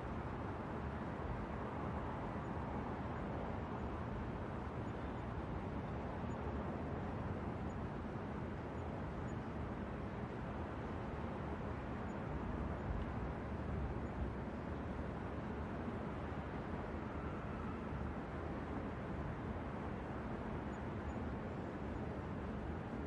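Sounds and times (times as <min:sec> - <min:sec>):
hum of city traffic: 0:00.0 - 0:23.0.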